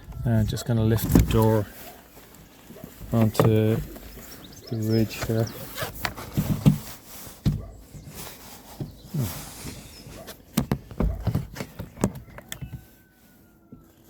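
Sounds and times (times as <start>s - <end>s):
plastic panel knocks and clicks: 10.5s - 12.8s.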